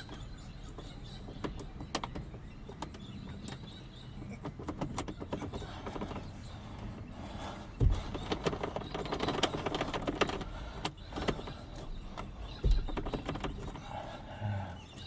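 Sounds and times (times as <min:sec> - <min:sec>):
dull thumps: 0:07.0 - 0:14.2.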